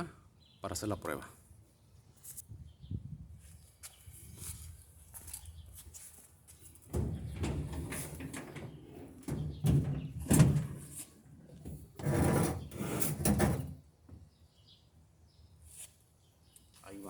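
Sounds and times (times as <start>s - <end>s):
washing machine scraping and bumping: 6.9s - 13.8s.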